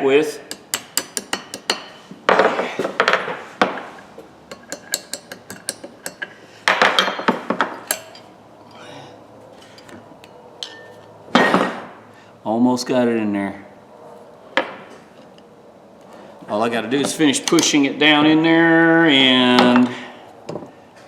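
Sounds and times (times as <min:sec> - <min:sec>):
small hammer tapping on steel: 0:00.5 - 0:02.0, 0:04.5 - 0:06.3, 0:17.1 - 0:17.8
metal clattering: 0:04.5 - 0:08.3, 0:16.9 - 0:17.9.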